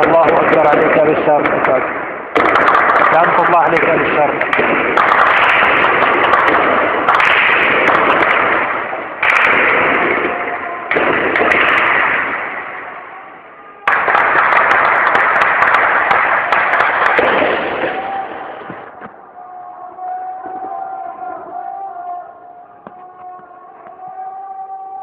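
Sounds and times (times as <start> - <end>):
heavy gunfire: 0.0 - 19.2.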